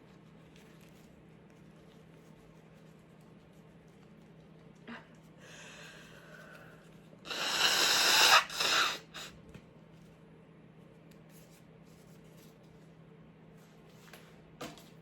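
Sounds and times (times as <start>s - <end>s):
person sneezing: 7.3s - 9.4s.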